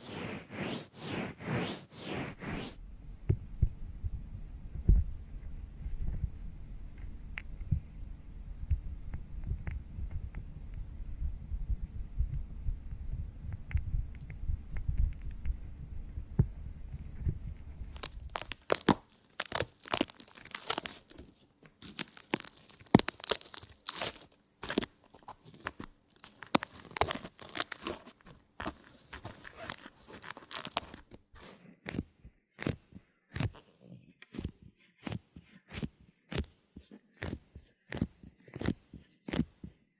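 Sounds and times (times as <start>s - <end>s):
low pulsing throb: 2.8s - 17.8s
close crackling and crinkling: 4.8s - 8.0s, 8.6s - 10.9s, 12.4s - 39.6s.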